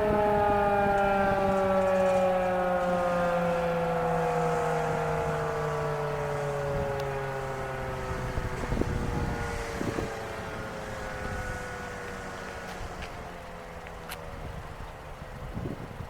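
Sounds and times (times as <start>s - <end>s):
warning siren winding down: 0.0s - 12.7s
wind bumps on microphone: 8.2s - 10.2s, 14.2s - 16.0s.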